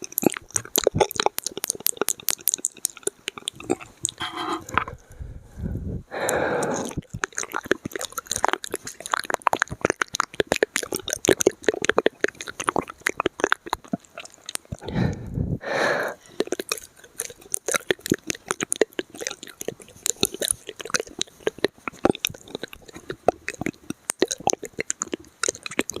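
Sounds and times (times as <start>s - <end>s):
wet mouth clicks and smacks: 0.0s - 5.2s, 6.2s - 15.3s, 16.2s - 26.0s
breathy sound: 4.2s - 7.0s, 14.8s - 16.5s.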